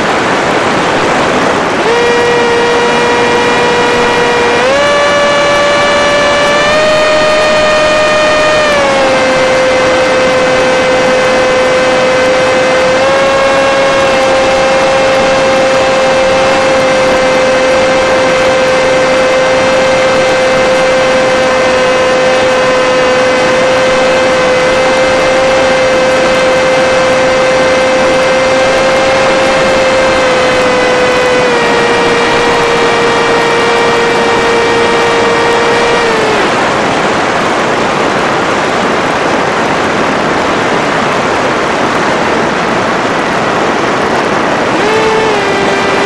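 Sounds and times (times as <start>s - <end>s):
model plane electric motor whining: 1.8s - 36.7s, 44.7s - 46.0s.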